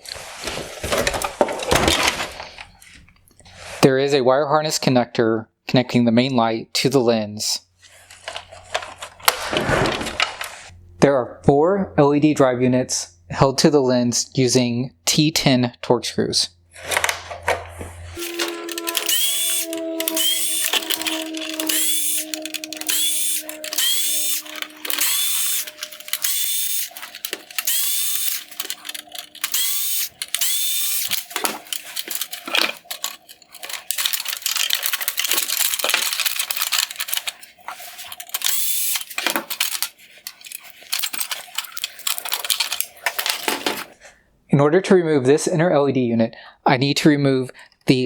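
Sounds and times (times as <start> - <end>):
power screwdriver bursts: 18.2 - 43.6.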